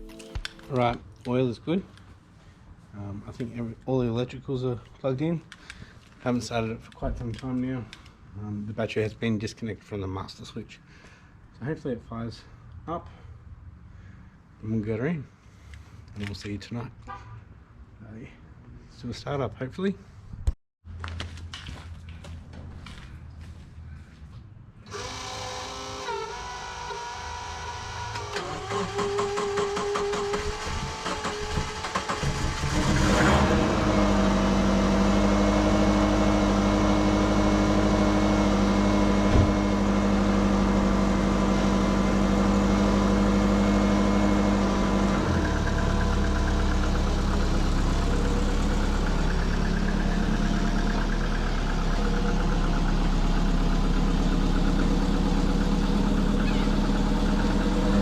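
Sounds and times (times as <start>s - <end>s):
car engine cranking: 24.9s - 58.0s
car engine idling: 31.8s - 58.0s.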